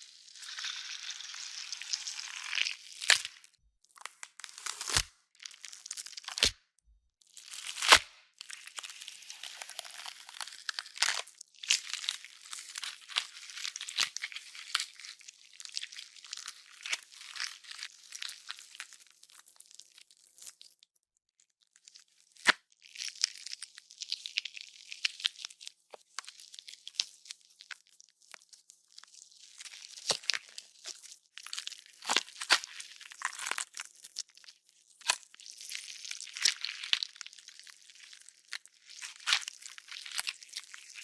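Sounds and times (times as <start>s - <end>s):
wet flesh tearing and squishing: 0.3s - 6.6s, 7.3s - 20.8s, 22.3s - 41.0s
bone crunches: 0.6s - 6.7s, 7.5s - 15.0s, 26.2s - 41.0s.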